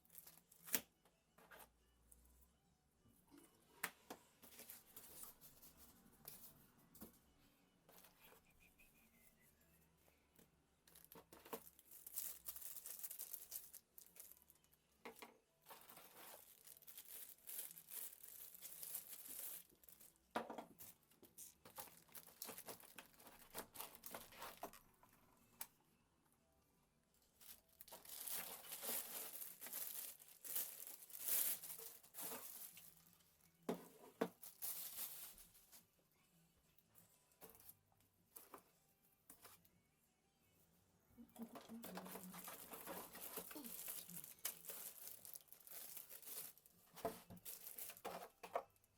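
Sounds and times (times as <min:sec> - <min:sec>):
packaging rustling and tearing: 0:10.8 - 0:14.7, 0:15.7 - 0:20.2, 0:20.8 - 0:24.8, 0:27.4 - 0:33.2, 0:41.8 - 0:48.3.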